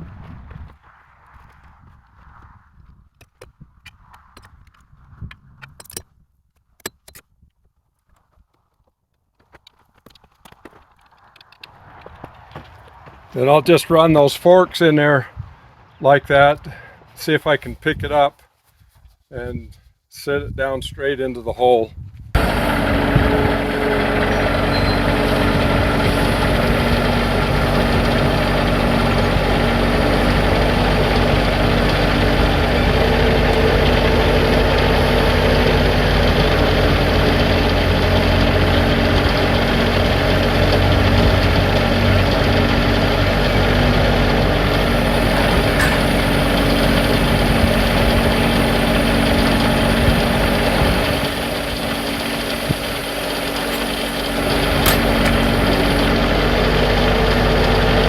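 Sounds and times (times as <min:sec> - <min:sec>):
tractor engine running steadily: 0:22.4 - 0:58.0.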